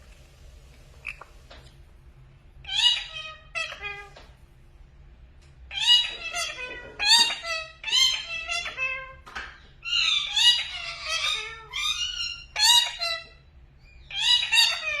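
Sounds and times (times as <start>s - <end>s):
parrot squeaky calls: 2.6s - 4.1s, 5.7s - 9.2s, 9.8s - 13.4s, 14.0s - 15.0s.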